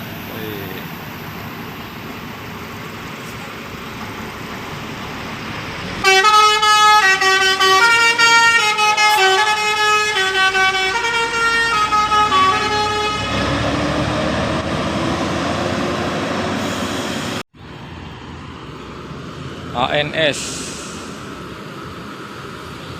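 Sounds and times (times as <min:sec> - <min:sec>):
bus engine passing: 0:00.0 - 0:22.9
musical air horn tune: 0:06.0 - 0:13.6.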